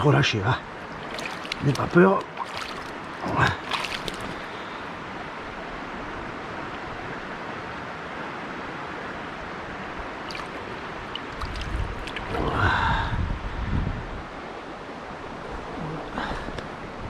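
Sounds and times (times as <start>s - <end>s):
river flowing: 0.6s - 13.0s.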